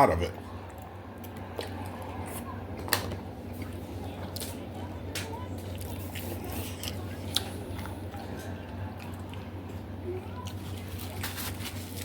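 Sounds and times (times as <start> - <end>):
steady low hum: 0.0 - 12.0
person chewing food: 5.6 - 12.0.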